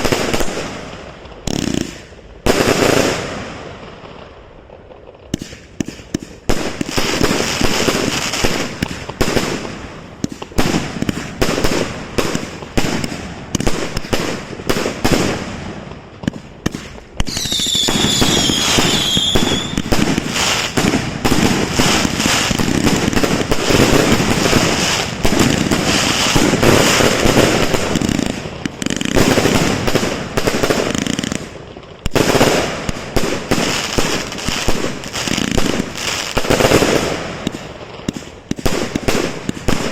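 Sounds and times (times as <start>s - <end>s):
fireworks bangs and crackling: 0.0s - 39.9s
shrill firework whistle: 17.2s - 20.7s.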